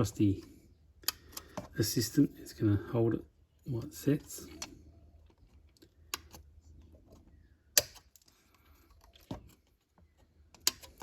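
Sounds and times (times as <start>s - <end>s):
snips clipping plastic: 7.7s - 8.3s, 10.5s - 11.0s.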